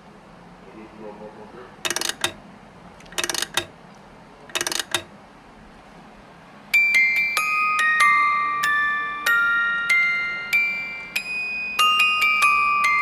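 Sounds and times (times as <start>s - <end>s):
gentle keyboard melody: 6.7s - 13.0s.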